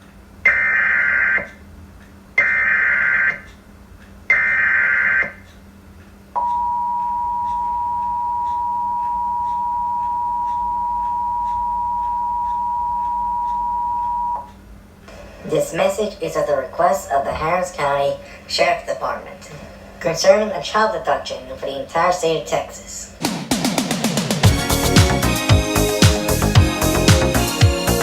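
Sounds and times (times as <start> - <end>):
two-tone attention signal: 6.4 - 14.5.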